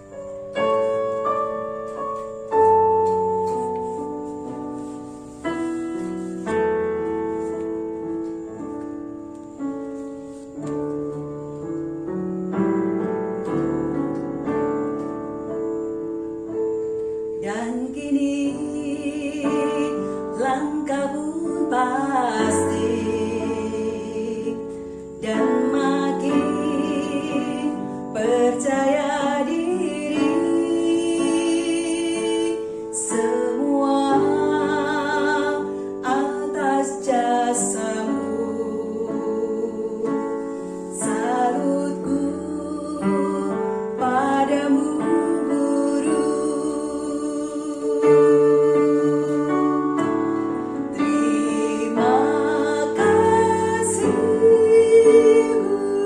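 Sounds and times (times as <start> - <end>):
piano playing: 0.0 - 56.0
woman singing with vibrato: 17.4 - 49.9, 50.9 - 56.0.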